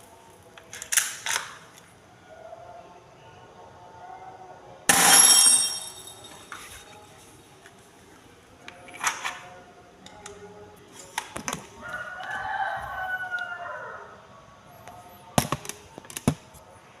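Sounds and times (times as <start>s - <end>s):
rooster crowing: 11.8s - 14.3s.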